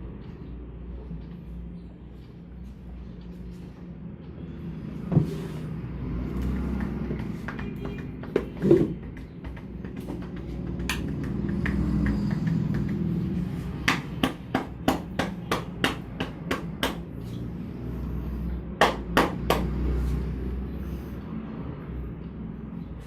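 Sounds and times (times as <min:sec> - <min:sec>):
hands slapping head and shoulders: 0:06.4 - 0:17.3, 0:18.8 - 0:19.8.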